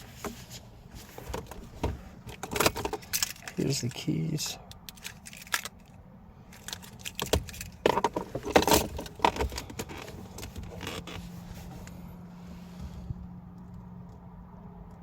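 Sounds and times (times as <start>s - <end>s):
car keys jangling: 2.2s - 11.2s.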